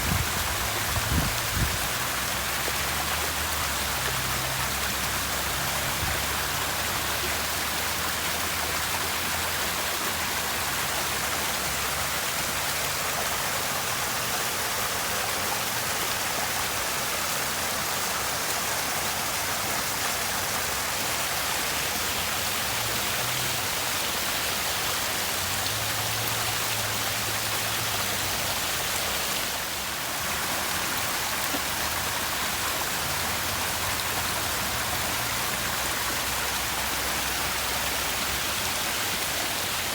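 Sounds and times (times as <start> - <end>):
water rushing and splashing: 0.0 - 39.9.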